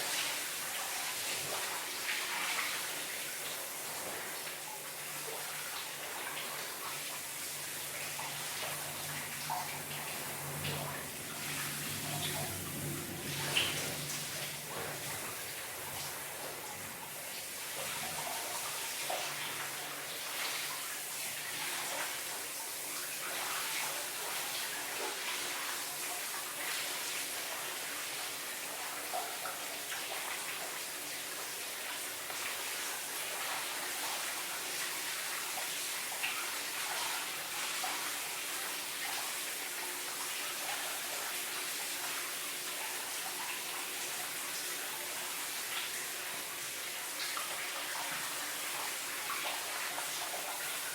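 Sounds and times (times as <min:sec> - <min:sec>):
shower water spraying: 0:00.0 - 0:50.9
water splashing on floor: 0:00.0 - 0:50.9.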